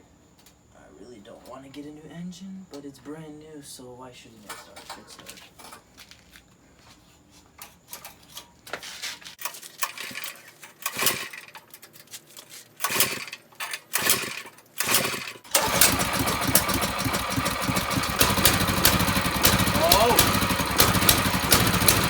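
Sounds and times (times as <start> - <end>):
recoil starter pulls: 9.4 - 22.0
small engine running: 12.8 - 22.0.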